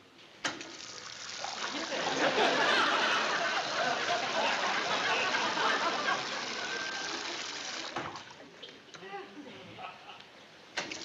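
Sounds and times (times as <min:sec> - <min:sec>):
water running from faucet: 0:00.6 - 0:02.2, 0:03.2 - 0:08.3.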